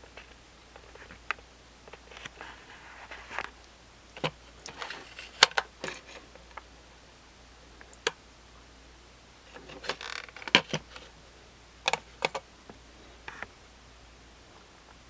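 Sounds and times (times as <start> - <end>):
scraping rustle: 2.0 - 3.6
plastic clock clicks and knocks: 11.9 - 12.4.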